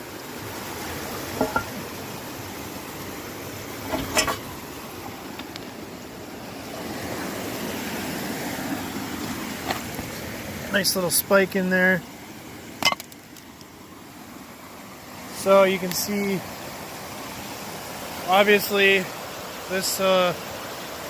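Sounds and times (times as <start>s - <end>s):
creek water running: 0.0s - 21.0s
short knocks: 1.3s - 1.8s.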